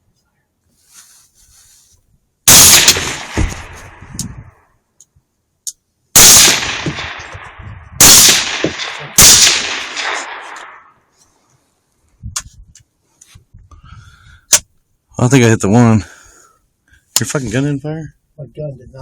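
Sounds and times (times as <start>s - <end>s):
rifle shots with rolling echo: 2.5s - 4.2s, 6.2s - 11.1s.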